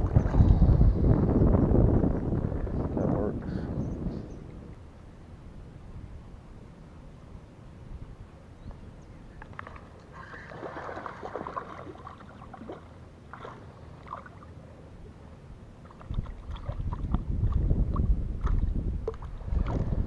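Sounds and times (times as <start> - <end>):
water splashing around kayak: 0.0 - 1.3, 9.3 - 20.0
wind buffeting microphone: 0.0 - 6.7, 15.9 - 20.0.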